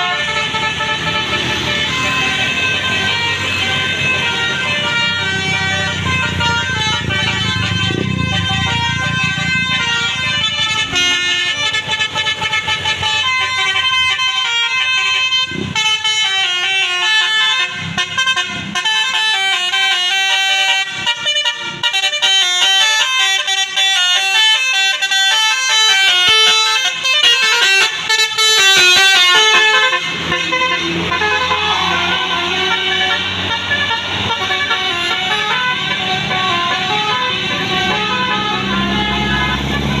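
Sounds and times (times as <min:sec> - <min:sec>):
multi-note bus horn tune: 0:00.0 - 0:40.0.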